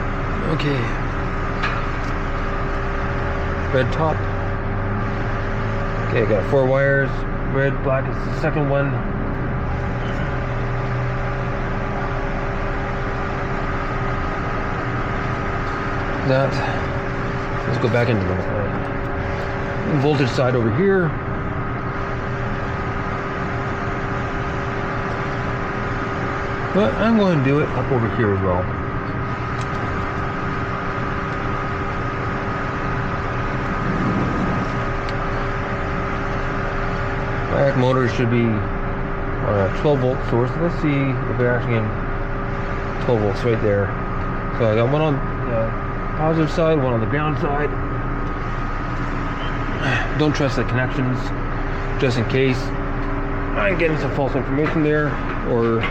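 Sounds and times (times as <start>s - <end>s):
steady machine hum: 0.0s - 55.9s.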